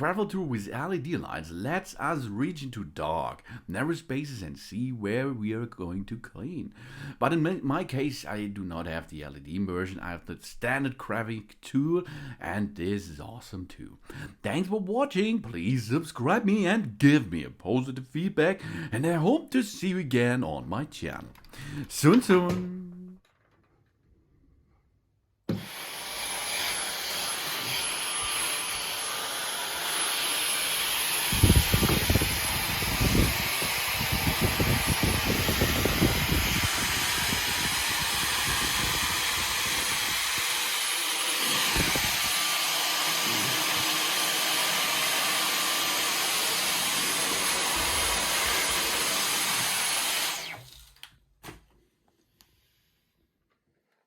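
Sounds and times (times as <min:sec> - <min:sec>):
vacuum cleaner whining: 0:25.5 - 0:51.0.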